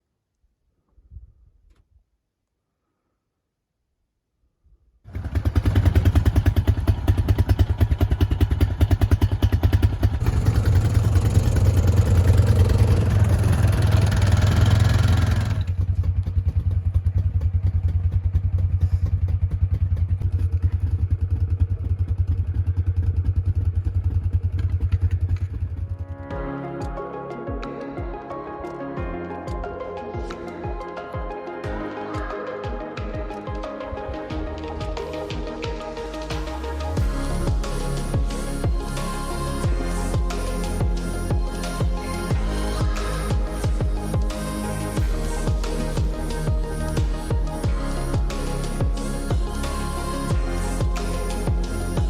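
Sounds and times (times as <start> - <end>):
vehicle engine running: 5.1 - 26.2
music: 10.2 - 15.7, 25.9 - 52.0.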